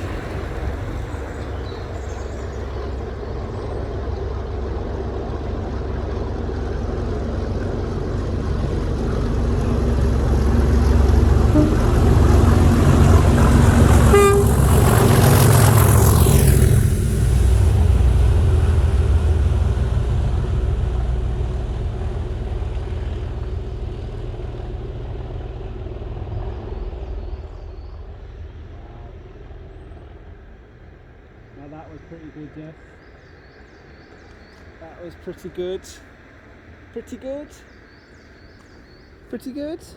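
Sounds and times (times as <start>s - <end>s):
high engine whine: 0.0s - 35.1s
diesel locomotive engine accelerating: 0.0s - 39.9s
locomotive horn toot: 10.4s - 16.2s.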